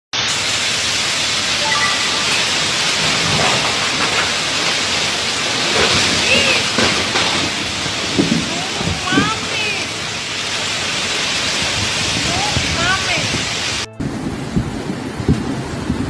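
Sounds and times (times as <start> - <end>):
heavy rain pouring: 0.2 - 16.0.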